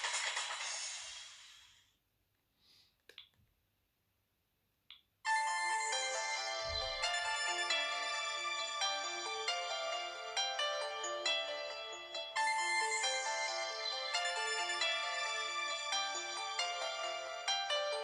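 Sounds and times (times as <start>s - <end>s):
phone ringtone: 5.3s - 18.0s
polyphonic ringtone melody: 5.3s - 18.0s.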